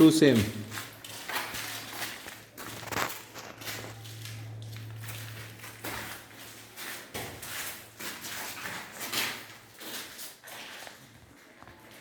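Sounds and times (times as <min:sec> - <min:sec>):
footsteps scuffing: 0:00.0 - 0:12.0
low steady hum: 0:01.7 - 0:08.2.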